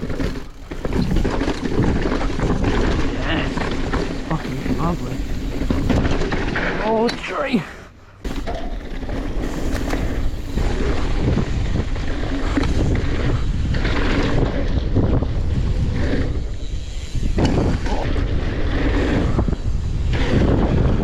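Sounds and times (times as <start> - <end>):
wind buffeting microphone: 8.2 - 21.0.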